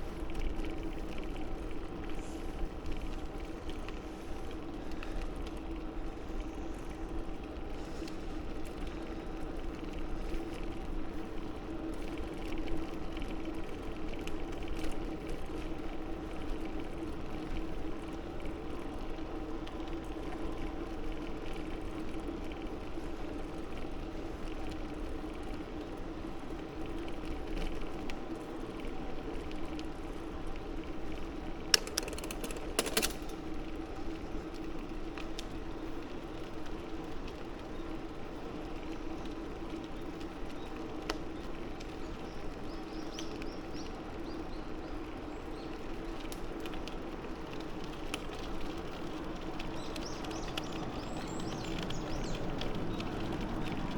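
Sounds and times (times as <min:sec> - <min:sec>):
bicycle tyres and drivetrain humming: 0:00.0 - 0:53.9
sharp clicks: 0:31.7 - 0:33.4.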